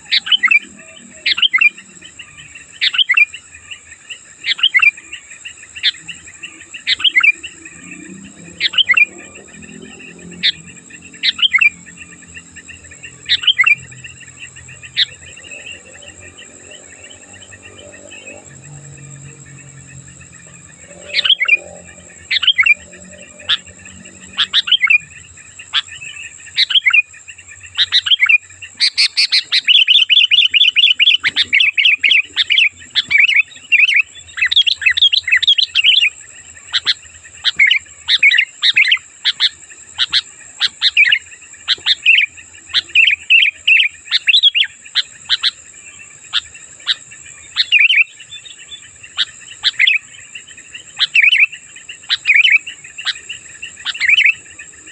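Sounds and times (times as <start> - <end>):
birds calling and chattering: 0.0 - 54.9
steady high whine: 0.0 - 54.9.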